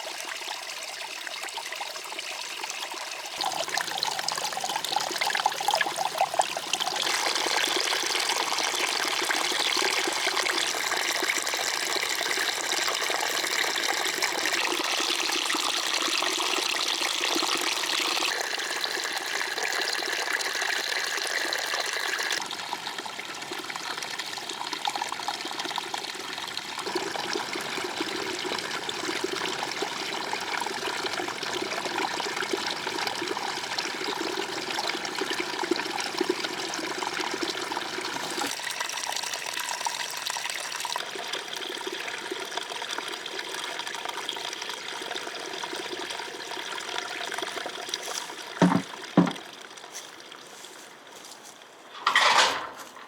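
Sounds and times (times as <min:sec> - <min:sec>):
stream water rushing: 0:48.6 - 0:49.5.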